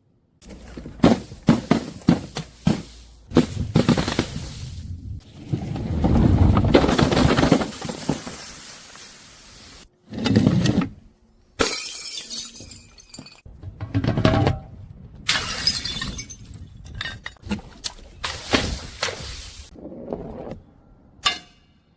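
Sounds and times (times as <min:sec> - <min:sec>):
glass bottles being crushed: 0:11.6 - 0:13.5, 0:15.3 - 0:17.4.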